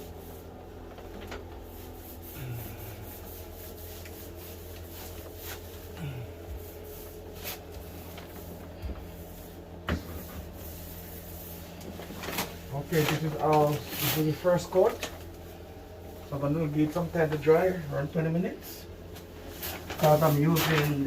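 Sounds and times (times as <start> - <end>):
paintbrush strokes on wooden door: 0.0 - 0.6, 1.5 - 14.9
steady low hum: 0.0 - 21.0.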